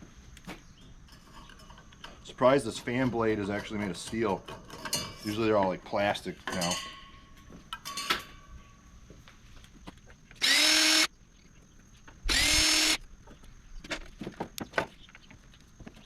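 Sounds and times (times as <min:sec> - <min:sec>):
small metallic clicks and clinks: 0:06.4 - 0:08.4
power drill motor whining: 0:10.4 - 0:11.1, 0:12.3 - 0:13.0.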